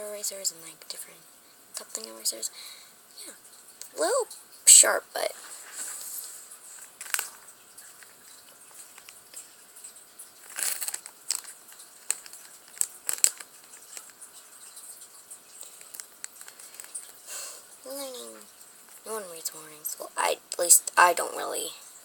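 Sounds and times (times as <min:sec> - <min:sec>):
packaging crinkling: 0:05.6 - 0:09.6, 0:10.3 - 0:17.3
plastic pieces clicking: 0:10.4 - 0:14.2.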